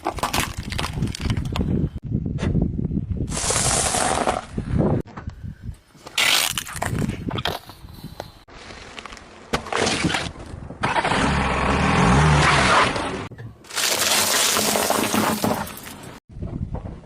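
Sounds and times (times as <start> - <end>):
tyre crushing brittle objects: 0.0 - 1.6, 6.1 - 7.6, 13.7 - 16.1.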